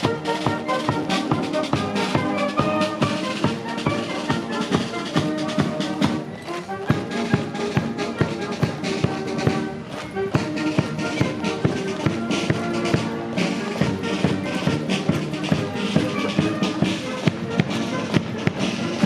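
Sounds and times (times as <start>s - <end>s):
military band playing: 0.0s - 19.0s.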